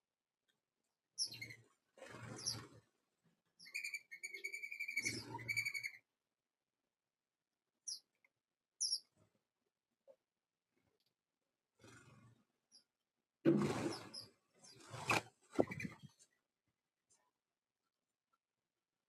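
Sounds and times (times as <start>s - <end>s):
birds chirping: 1.2s - 1.6s, 2.2s - 2.7s, 3.6s - 6.0s, 7.8s - 8.1s, 8.8s - 9.1s, 13.8s - 16.2s.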